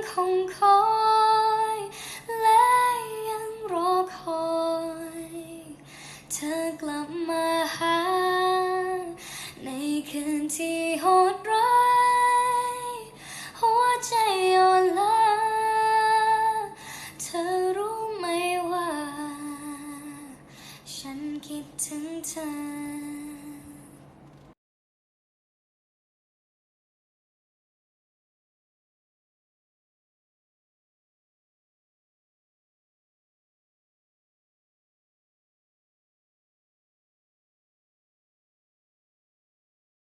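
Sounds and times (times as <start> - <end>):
woman singing slow melody: 0.0 - 24.0.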